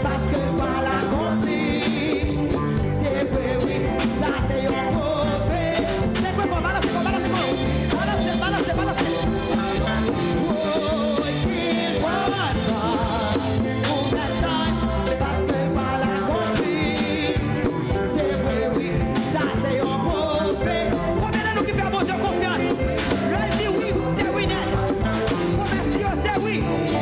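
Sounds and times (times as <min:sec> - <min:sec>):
people singing: 0:00.0 - 0:27.0
worship band playing upbeat song: 0:00.0 - 0:27.0.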